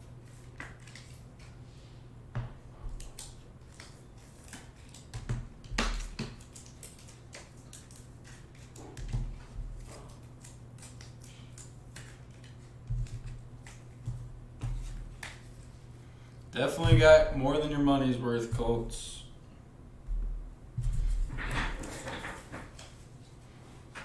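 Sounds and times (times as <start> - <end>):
cards and wrappers rustling: 3.0 - 15.9
low steady hum: 9.1 - 23.8.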